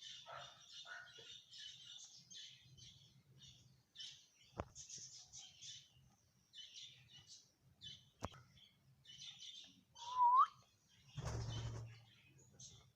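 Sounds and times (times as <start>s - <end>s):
parrot whistle rising: 10.0s - 10.6s.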